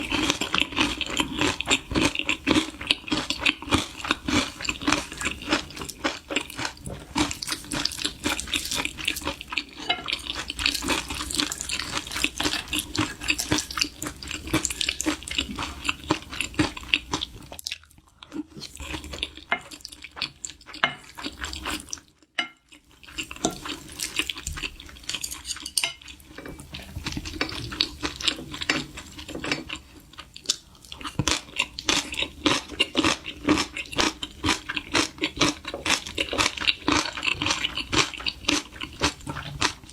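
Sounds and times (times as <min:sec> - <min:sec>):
person chewing: 0:00.0 - 0:39.9
utensils clicking against dishes: 0:24.8 - 0:26.7.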